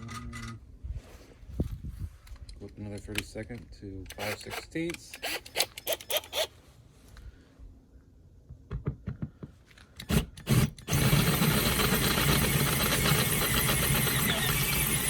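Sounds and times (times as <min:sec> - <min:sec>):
power drill drilling: 0:04.2 - 0:04.6, 0:10.0 - 0:15.0.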